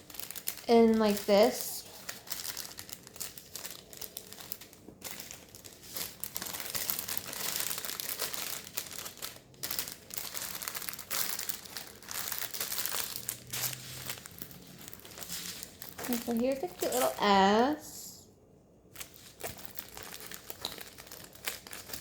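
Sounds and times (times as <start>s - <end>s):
plastic packaging crinkling: 0.0s - 17.6s, 18.9s - 22.0s.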